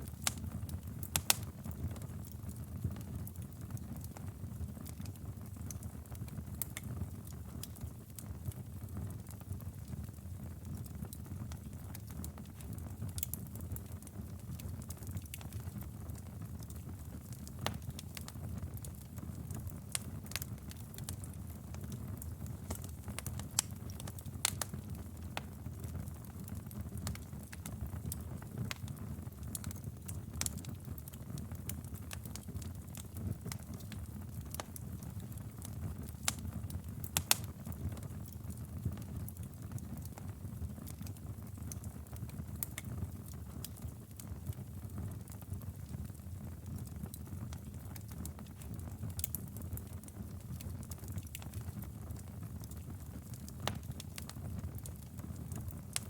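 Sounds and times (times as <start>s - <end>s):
fire crackling: 0.0s - 56.0s
low rumble of flames: 0.0s - 56.0s
sharp pops of fire: 0.2s - 1.8s, 19.9s - 25.6s, 35.6s - 38.2s, 53.5s - 56.0s.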